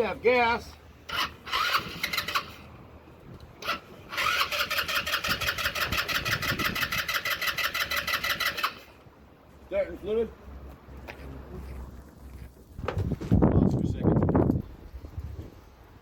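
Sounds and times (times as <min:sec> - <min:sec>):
engine cranking without starting: 0:01.0 - 0:02.7, 0:03.6 - 0:09.0.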